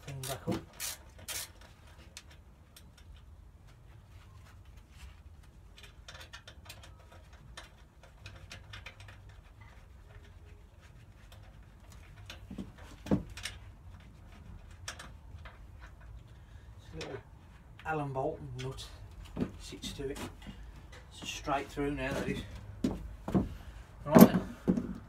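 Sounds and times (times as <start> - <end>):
metal parts clicking and scraping: 0.0 - 3.4, 5.4 - 17.2.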